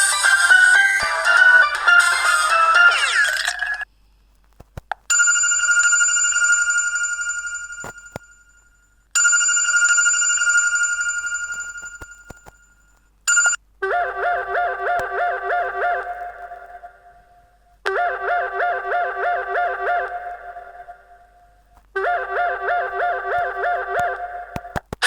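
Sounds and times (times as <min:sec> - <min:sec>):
quick repeating ringtone: 0:05.1 - 0:08.6, 0:09.2 - 0:13.6
bell-like phone ringtone: 0:05.1 - 0:13.6.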